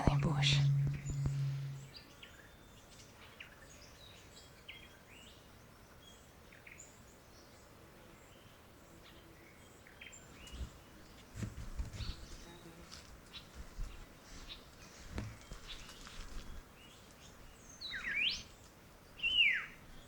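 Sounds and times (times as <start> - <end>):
soft low thumps: 0.0 - 1.9
forest ambience: 0.0 - 2.0.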